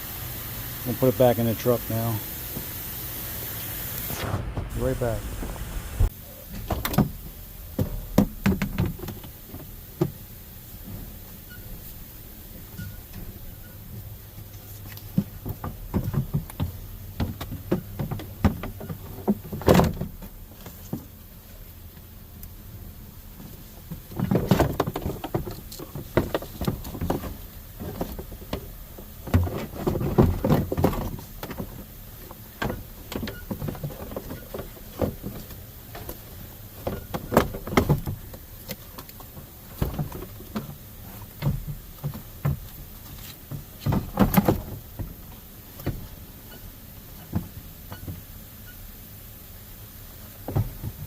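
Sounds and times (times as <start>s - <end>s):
parts knocking and rattling: 6.4s - 10.2s, 12.6s - 21.2s, 23.3s - 48.3s.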